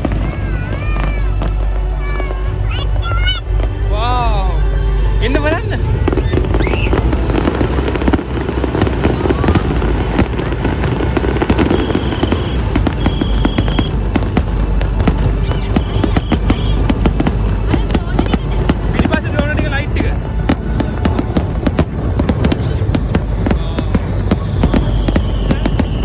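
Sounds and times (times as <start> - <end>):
fireworks crackling and popping: 0.0 - 26.0
low rumble: 0.0 - 26.0.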